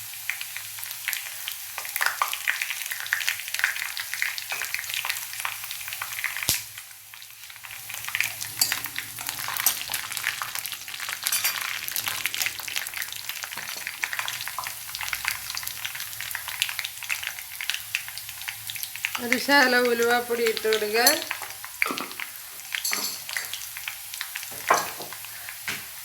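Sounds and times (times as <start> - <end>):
hot oil sizzling in a pan: 0.0 - 26.0
spoon stirring: 8.4 - 10.4, 11.0 - 12.3, 19.2 - 23.6.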